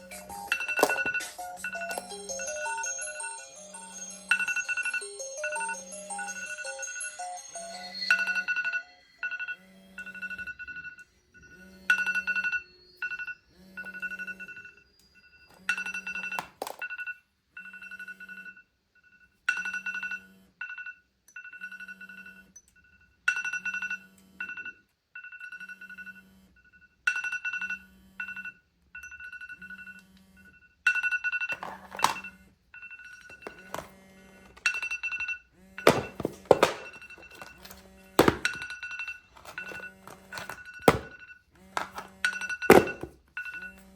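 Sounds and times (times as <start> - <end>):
electronic alarm beeps: 4.3 - 18.3.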